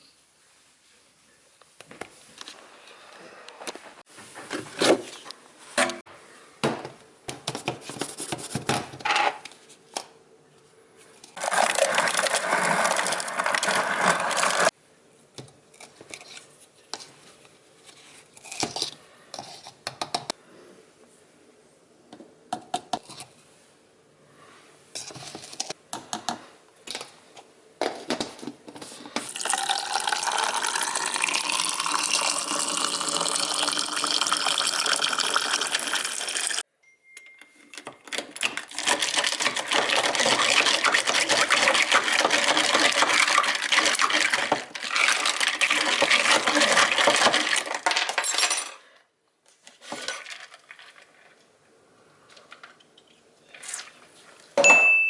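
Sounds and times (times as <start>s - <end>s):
water tap running: 29.5s - 36.6s
dishes clinking: 54.6s - 55.0s.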